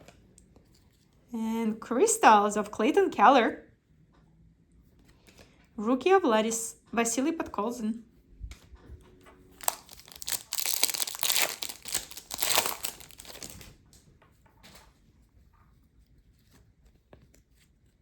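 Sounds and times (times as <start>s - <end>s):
foil wrapper crinkling and tearing: 9.5s - 13.8s.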